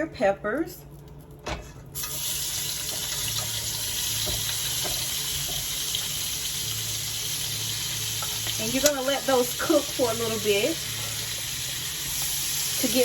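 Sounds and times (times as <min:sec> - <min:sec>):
peppers sizzling in skillet: 0:01.9 - 0:13.0.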